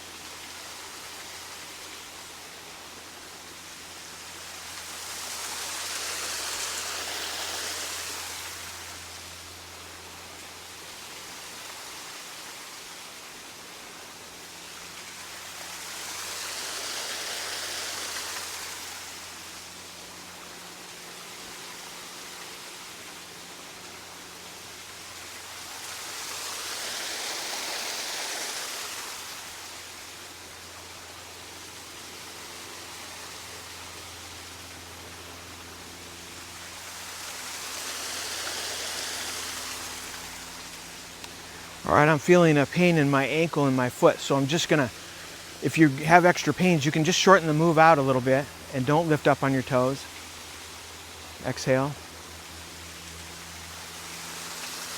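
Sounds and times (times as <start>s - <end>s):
waterfall rushing: 36.9s - 52.0s.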